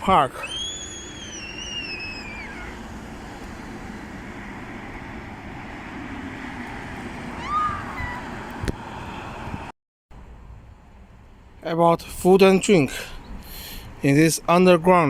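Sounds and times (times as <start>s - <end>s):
outdoor rushing noise: 0.0s - 11.2s
short whistle-like call: 0.4s - 2.8s.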